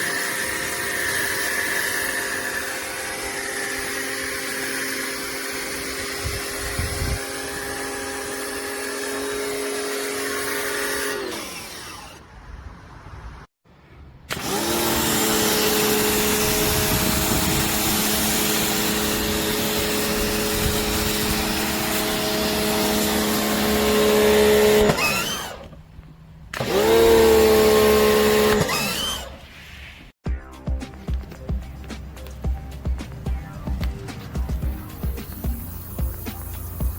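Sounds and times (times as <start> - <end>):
pressure washer motor hum: 0.0 - 12.2, 14.3 - 29.4, 31.0 - 36.9
water spray hissing: 31.9 - 36.9.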